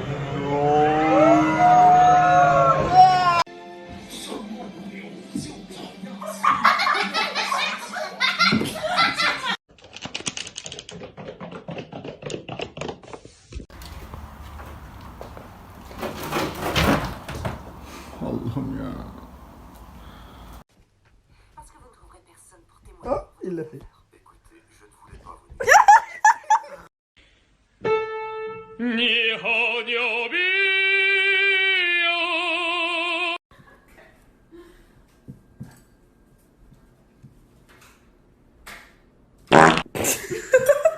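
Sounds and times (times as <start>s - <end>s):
steady hiss: 17.8s - 20.6s.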